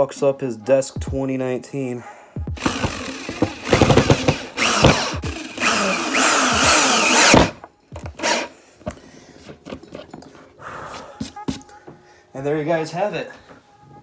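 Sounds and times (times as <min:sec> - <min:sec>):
power drill driving screws into wood: 0:02.6 - 0:08.5.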